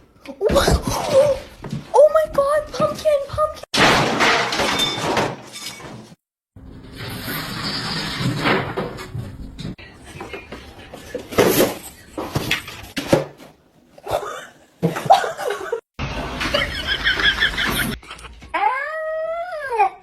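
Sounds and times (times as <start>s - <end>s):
domestic animal noises: 8.2s - 12.9s
laughter: 14.2s - 15.8s, 16.4s - 18.5s.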